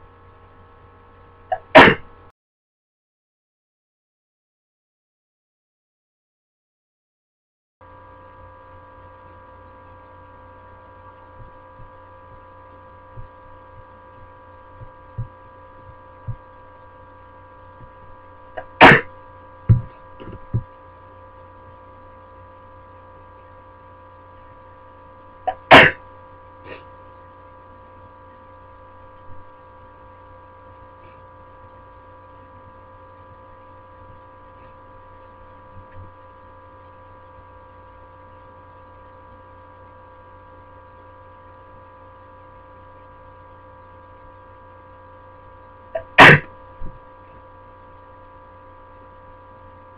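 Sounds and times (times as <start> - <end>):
steady electrical hum: 0.0 - 2.3, 7.8 - 49.9
person sneezing loudly: 1.5 - 2.1, 18.6 - 19.1, 25.5 - 26.0, 46.0 - 46.5.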